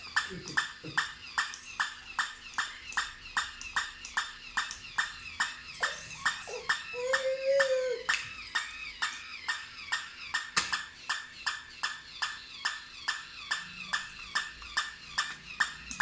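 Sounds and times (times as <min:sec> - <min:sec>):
toy dog barking: 0:00.2 - 0:10.0.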